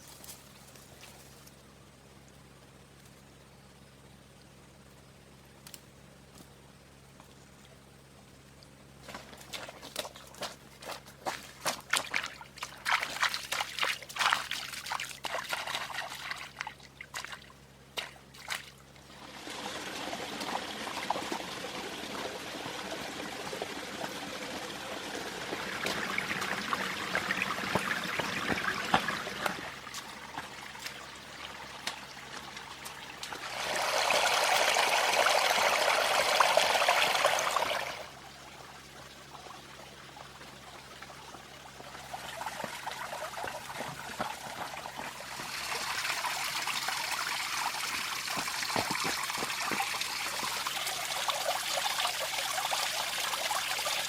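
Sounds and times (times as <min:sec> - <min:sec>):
water trickling and pouring: 0:19.0 - 0:54.0.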